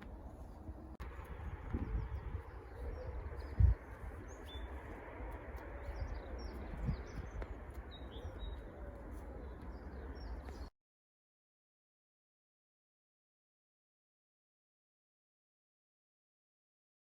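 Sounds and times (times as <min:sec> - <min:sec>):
small birds chirping: 0:00.0 - 0:10.7.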